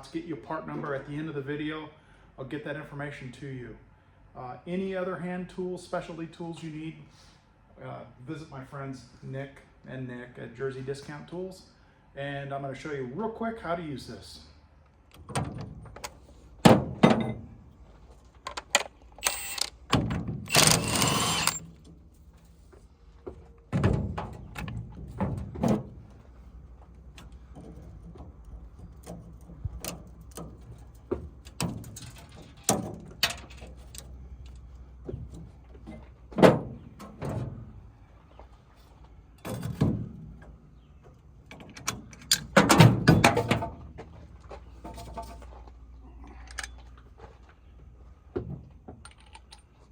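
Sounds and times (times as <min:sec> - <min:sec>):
metal clanks and knocks of tools: 0:15.2 - 0:17.4, 0:27.1 - 0:37.5, 0:41.5 - 0:43.8, 0:44.8 - 0:45.6, 0:48.4 - 0:49.9.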